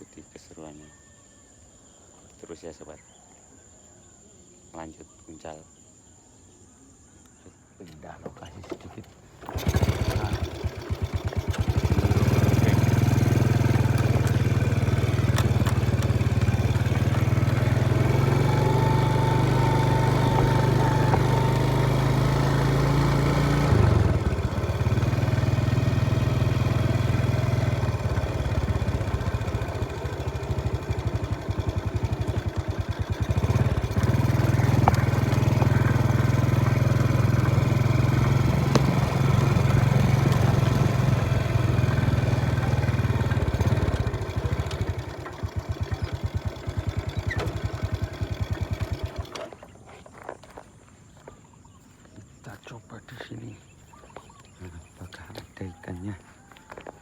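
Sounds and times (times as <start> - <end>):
small petrol engine running: 8.6 - 50.6.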